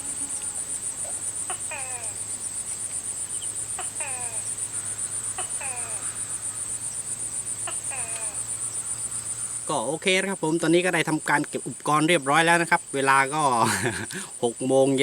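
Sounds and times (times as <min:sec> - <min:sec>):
insects trilling: 0:00.0 - 0:15.0.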